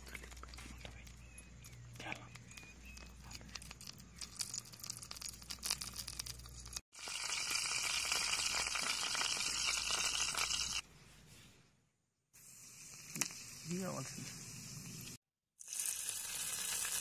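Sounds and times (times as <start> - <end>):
batter sizzling on a pan: 4.2 - 10.8, 12.4 - 17.0.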